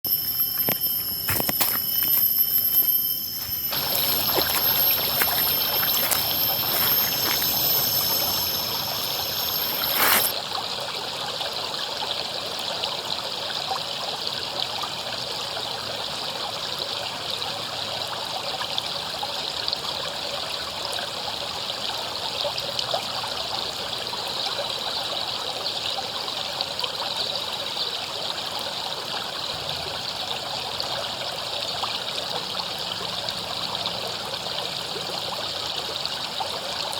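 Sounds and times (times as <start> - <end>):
high steady whine: 0.0 - 10.3
scattered clicks: 0.1 - 10.3
river water flowing over rocks: 0.8 - 10.3.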